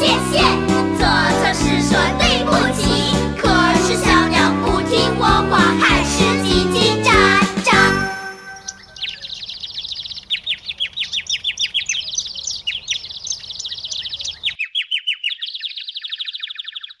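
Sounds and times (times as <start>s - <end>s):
songbird chirping: 7.8s - 17.0s.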